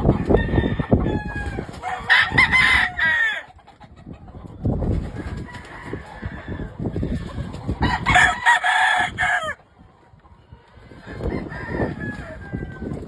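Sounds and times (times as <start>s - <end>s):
chicken calls: 0.0s - 13.0s
rooster crowing: 0.2s - 3.5s, 7.8s - 9.6s, 11.0s - 13.0s.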